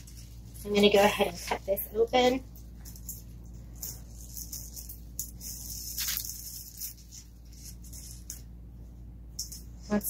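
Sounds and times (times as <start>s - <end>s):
plastic packaging crinkling: 3.8s - 8.3s.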